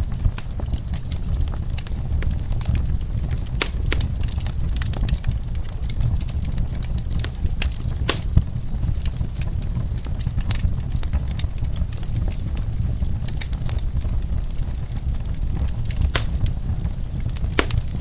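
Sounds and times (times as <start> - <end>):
wood fire crackling and popping: 3.5 - 5.6, 6.9 - 8.4, 15.9 - 18.0.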